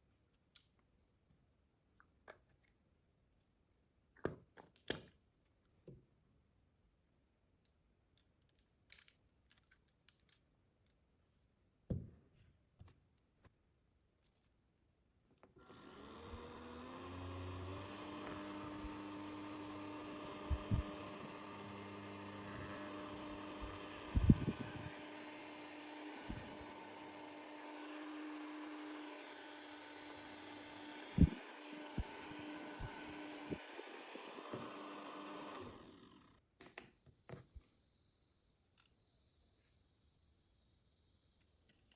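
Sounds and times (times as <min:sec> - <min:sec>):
small fan motor humming: 0:15.6 - 0:41.9.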